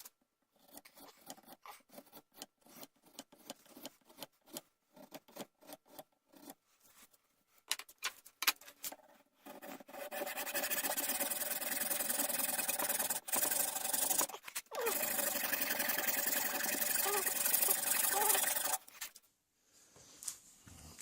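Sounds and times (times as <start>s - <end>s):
grinding rasping noise: 9.4s - 18.9s
tool scraping horn: 9.4s - 19.2s.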